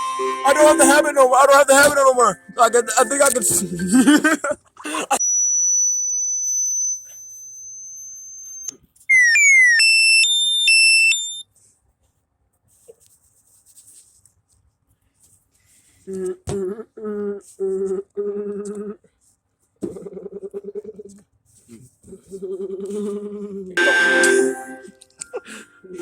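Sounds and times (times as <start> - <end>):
faint high steady tone: 0.0 - 3.5, 5.5 - 9.2, 23.8 - 26.0
electronic beeps sliding down: 5.2 - 11.4.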